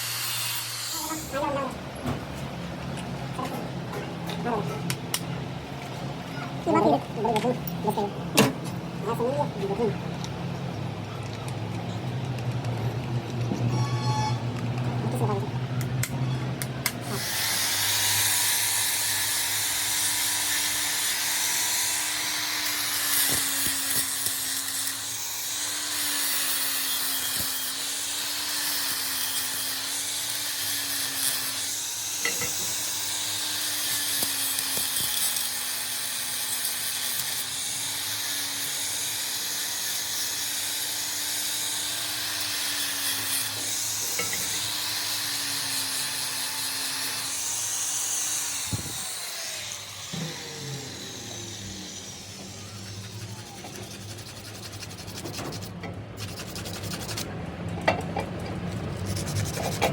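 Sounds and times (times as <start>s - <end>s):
machine tool motor hum: 41.8s - 57.3s.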